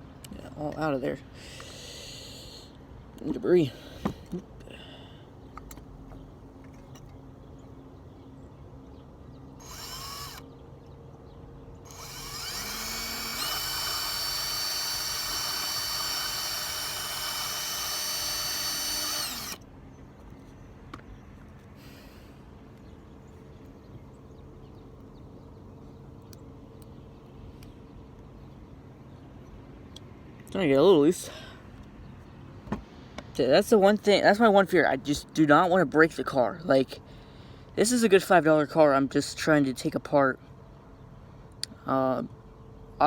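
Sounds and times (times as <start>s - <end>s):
small power drill drilling: 9.6s - 10.5s, 11.8s - 19.6s.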